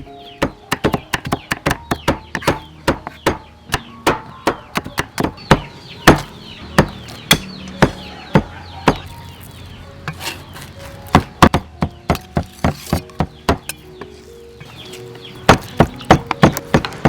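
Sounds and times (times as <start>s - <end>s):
knife chopping on wooden board: 4.1s - 9.1s, 11.1s - 13.8s.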